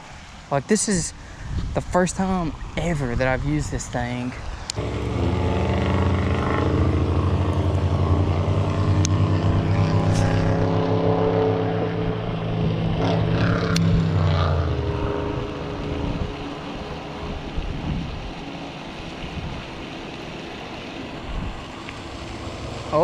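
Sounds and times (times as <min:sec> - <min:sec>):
engine running: 0:04.7 - 0:23.0.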